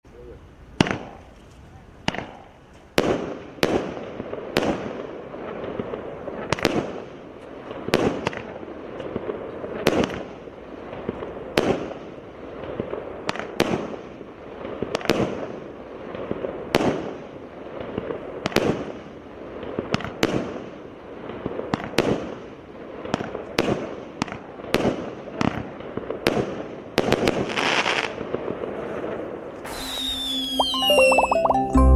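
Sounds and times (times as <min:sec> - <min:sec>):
firework bangs: 0:00.8 - 0:01.2, 0:02.0 - 0:30.8
firework crackling: 0:00.8 - 0:31.4.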